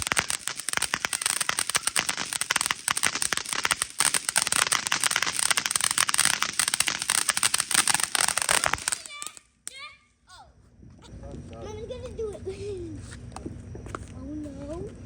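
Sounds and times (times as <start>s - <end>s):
fireworks crackling: 0.0s - 9.9s.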